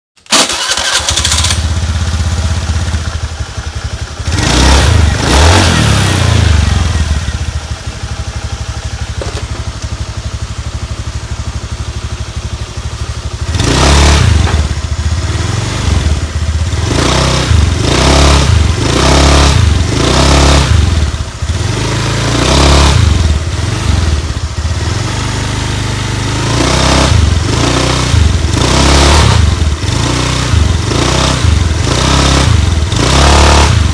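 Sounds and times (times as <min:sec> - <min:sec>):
scooter engine idling and revving: 0:00.2 - 0:33.9.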